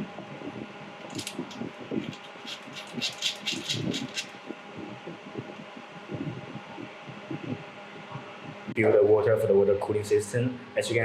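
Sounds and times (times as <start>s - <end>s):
steady low hum: 0.0s - 11.0s
connector clicks and rattles: 1.1s - 4.4s.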